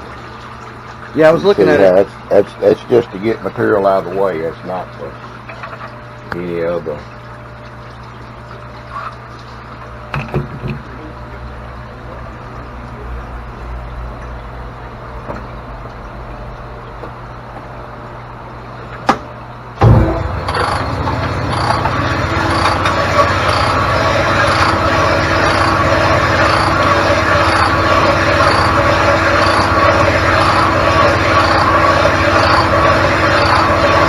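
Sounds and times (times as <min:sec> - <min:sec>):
honing machine running: 0:19.8 - 0:34.0.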